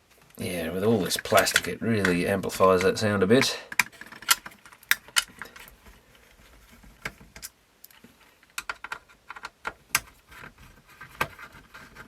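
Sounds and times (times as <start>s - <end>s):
plastic mechanism parts clicking: 1.0s - 5.8s, 7.0s - 12.0s.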